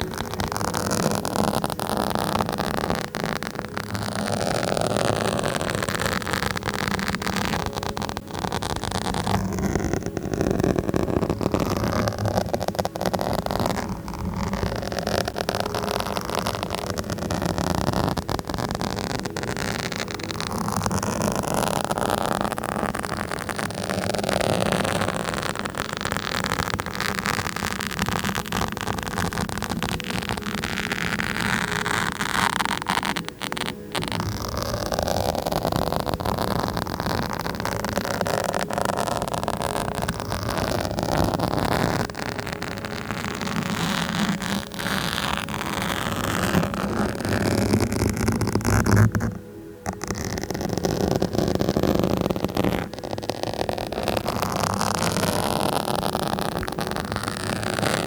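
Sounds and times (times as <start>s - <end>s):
scratching on microphone: 0.0s - 58.0s.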